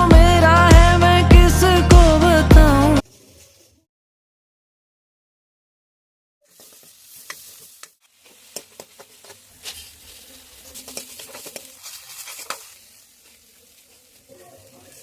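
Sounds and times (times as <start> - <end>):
food sizzling in hot oil: 6.4 - 15.0
utensil scraping a pan: 6.5 - 15.0.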